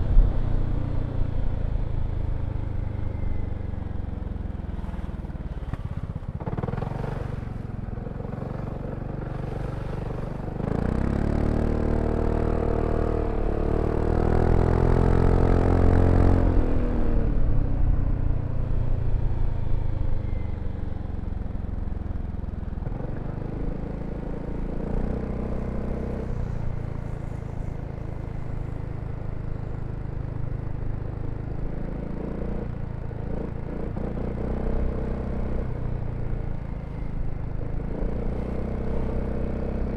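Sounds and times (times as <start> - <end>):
scooter engine accelerating: 3.7 - 17.8.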